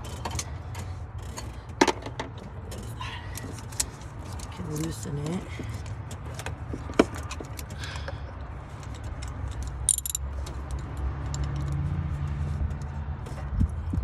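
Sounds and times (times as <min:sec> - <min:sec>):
steady low rumble: 0:00.0 - 0:14.0
metal hand tools clinking: 0:08.8 - 0:11.7
metallic jingle: 0:09.8 - 0:10.3.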